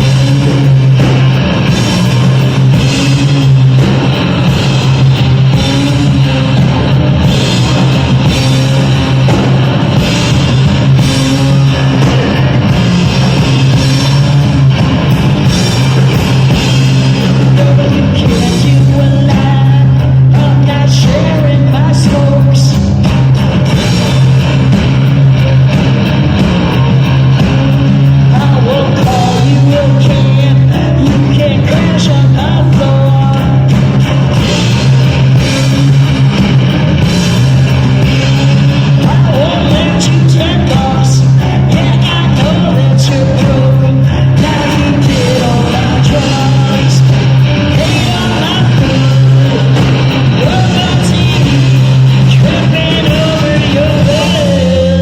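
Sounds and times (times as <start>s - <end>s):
heavy bass note: 0.0s - 55.0s
live rock band: 0.0s - 55.0s
person singing: 17.1s - 23.0s, 28.2s - 34.0s, 37.9s - 55.0s.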